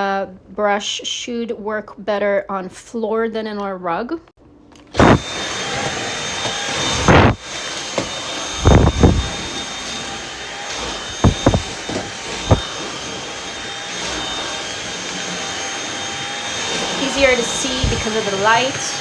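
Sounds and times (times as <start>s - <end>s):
vacuum cleaner running: 4.9s - 19.0s.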